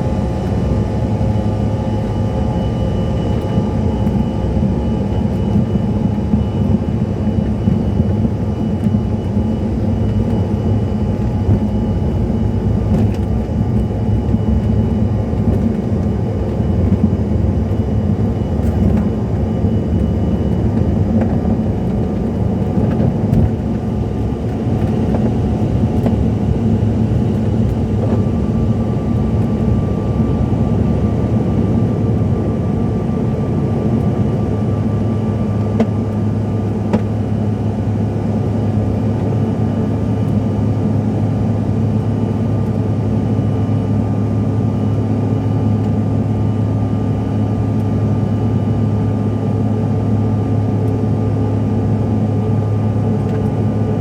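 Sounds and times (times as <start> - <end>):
jet engine cabin drone: 0.0 - 54.0.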